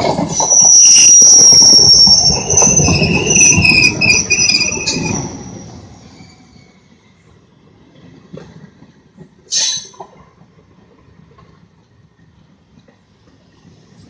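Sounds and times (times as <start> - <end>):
train wheels squealing: 0.0 - 7.1, 9.5 - 10.0
train rumble: 0.0 - 14.0.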